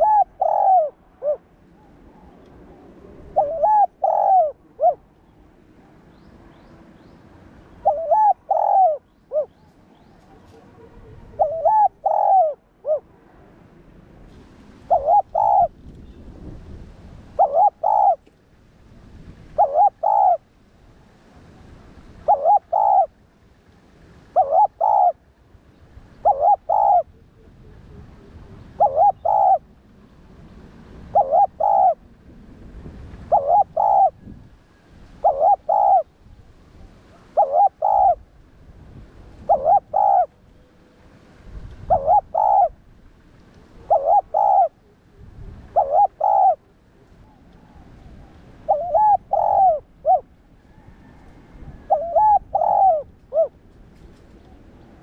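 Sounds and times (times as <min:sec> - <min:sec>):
dove cooing: 0:00.0 - 0:05.2, 0:07.8 - 0:13.1, 0:14.9 - 0:15.8, 0:17.3 - 0:18.3, 0:19.6 - 0:20.4, 0:22.2 - 0:23.2, 0:24.4 - 0:25.2, 0:26.2 - 0:29.7, 0:31.0 - 0:32.1, 0:33.3 - 0:34.3, 0:35.2 - 0:36.1, 0:36.8 - 0:38.2, 0:39.4 - 0:40.4, 0:41.9 - 0:42.8, 0:43.7 - 0:53.6.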